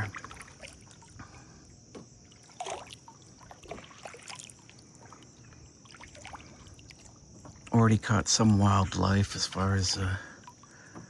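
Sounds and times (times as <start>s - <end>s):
water dripping and trickling: 0.0s - 11.0s.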